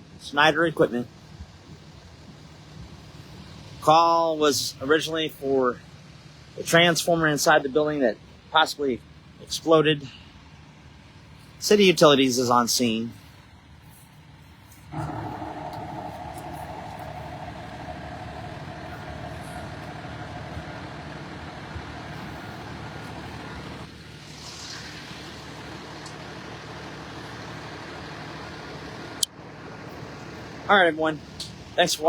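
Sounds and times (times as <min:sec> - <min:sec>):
truck engine running: 0:12.8 - 0:32.0.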